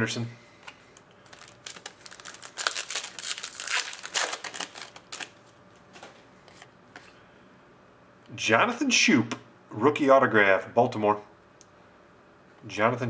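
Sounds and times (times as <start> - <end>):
cards rustling and flicking: 1.2 - 5.3.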